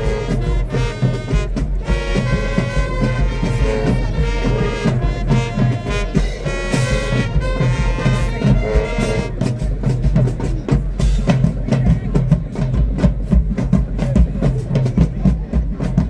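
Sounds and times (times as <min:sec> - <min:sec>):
horns holding a chord: 0:00.0 - 0:09.6
snare and bass drum cadence: 0:00.0 - 0:16.0.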